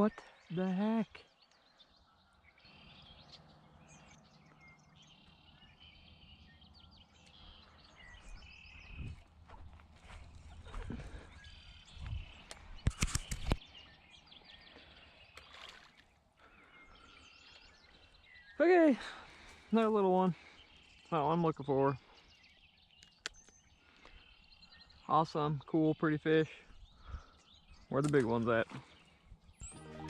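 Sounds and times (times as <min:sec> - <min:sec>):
birds chirping: 0:00.0 - 0:30.0
sharp clicks: 0:12.4 - 0:13.6, 0:28.0 - 0:28.4.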